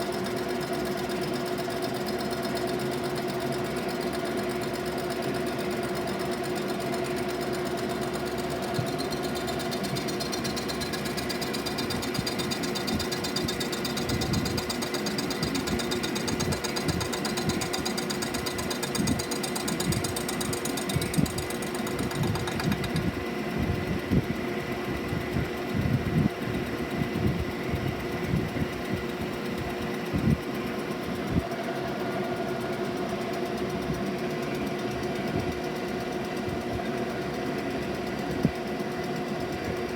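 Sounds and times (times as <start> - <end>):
machine tool humming: 5.1 - 25.3
cutter knocking on metal: 8.4 - 23.2.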